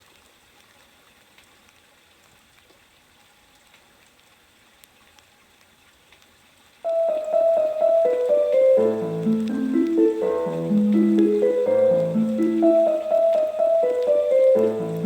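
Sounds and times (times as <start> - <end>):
faint background hiss: 0.0 - 15.0
soft ticks: 6.1 - 6.3, 6.9 - 15.0.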